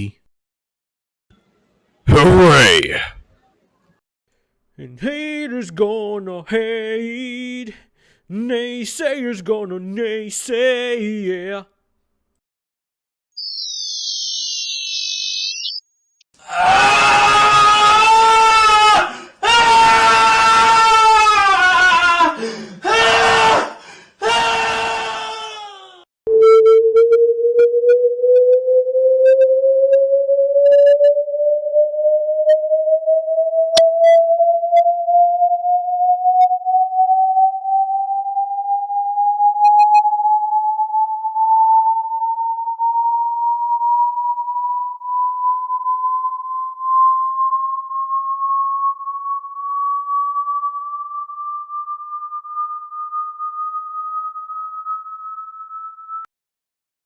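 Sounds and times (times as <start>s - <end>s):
rising electronic tone: 13.4s - 15.9s, 26.3s - 56.3s.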